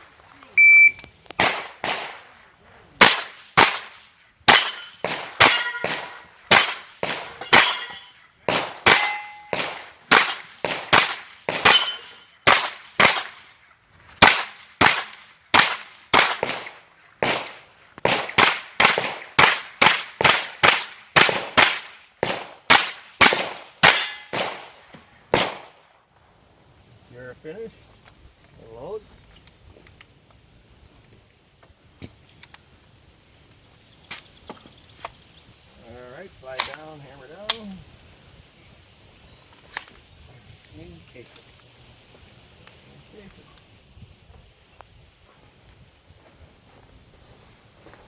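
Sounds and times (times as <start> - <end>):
carbine gunshots: 1.4 - 2.4, 3.0 - 13.5, 14.2 - 25.9
steel targets ringing: 4.5 - 6.0, 7.4 - 8.2, 8.9 - 9.6, 11.7 - 12.4, 23.8 - 24.4.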